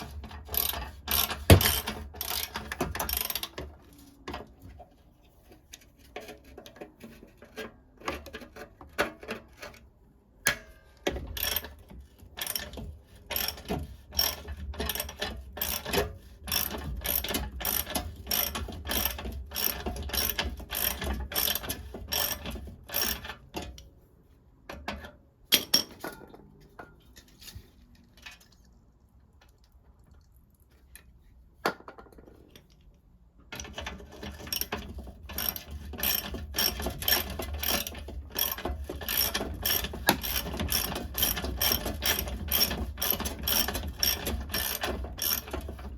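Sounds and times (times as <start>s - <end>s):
hand ratchet clicking: 0.5s - 3.6s, 11.4s - 11.7s, 12.4s - 23.3s, 33.6s - 45.6s.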